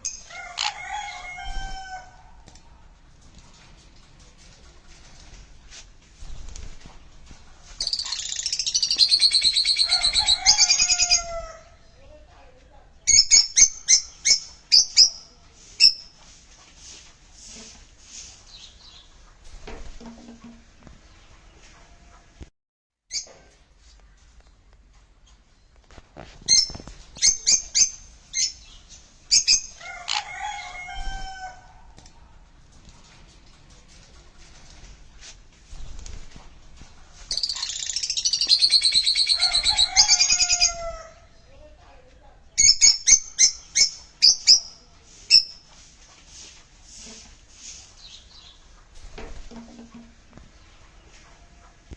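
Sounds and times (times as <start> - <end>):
parrot shrieking: 0.3 - 1.9.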